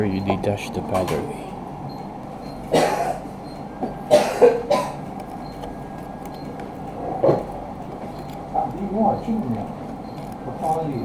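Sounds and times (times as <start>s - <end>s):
person coughing: 2.7s - 3.2s, 4.1s - 5.0s.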